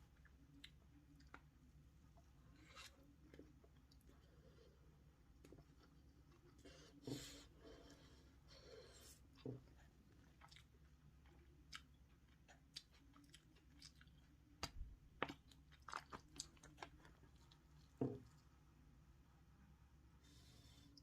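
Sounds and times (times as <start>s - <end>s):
person chewing and crunching: 9.3s - 17.9s.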